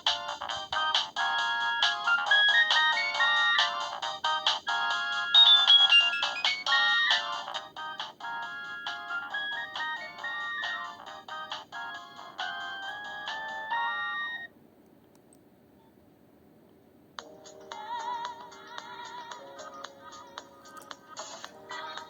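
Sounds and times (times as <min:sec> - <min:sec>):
synthesized ringtone melody: 0:00.0 - 0:14.5.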